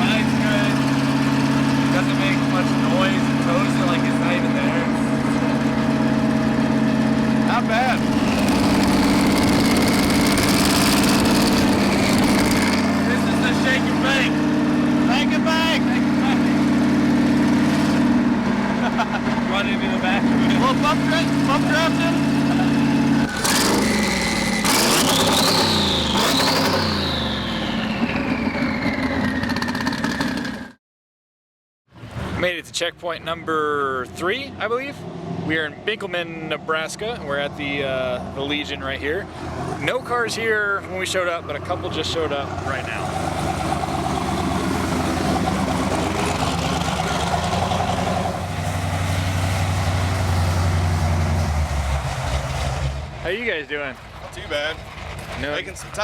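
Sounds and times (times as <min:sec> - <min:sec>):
car engine revving: 0:00.0 - 0:30.7, 0:41.1 - 0:53.4
high engine whine: 0:00.0 - 0:30.8, 0:34.1 - 0:56.0.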